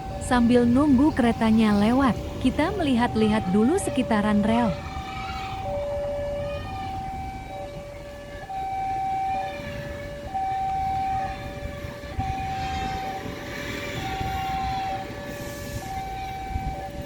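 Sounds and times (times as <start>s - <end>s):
two-tone level crossing alarm: 0.0s - 17.0s
rushing noise: 12.0s - 16.8s.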